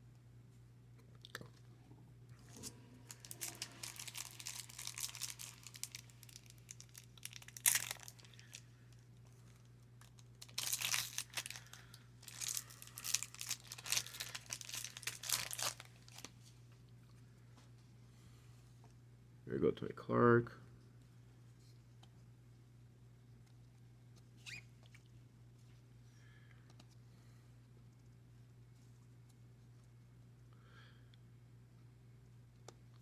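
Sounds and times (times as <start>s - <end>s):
wrapper tearing: 3.1s - 8.6s, 10.0s - 16.3s
wrapper crackling: 3.1s - 8.7s, 9.6s - 16.3s.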